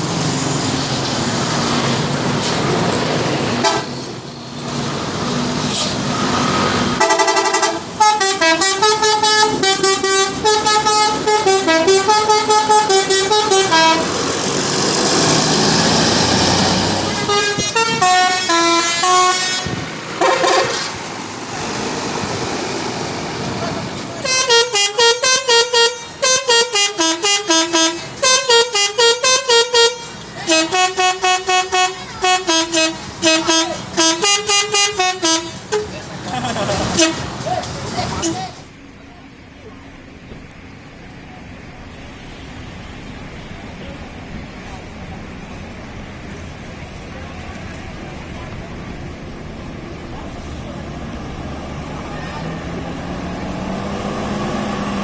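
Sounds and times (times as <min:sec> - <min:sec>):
musical air horn playing tunes: 0:07.0 - 0:14.2, 0:17.0 - 0:21.0, 0:24.2 - 0:36.1, 0:36.8 - 0:37.5, 0:38.2 - 0:38.6.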